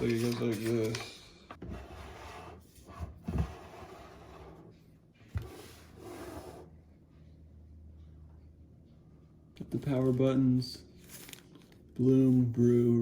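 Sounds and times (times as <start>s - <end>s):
metal parts rustling and scraping: 0.0s - 1.2s.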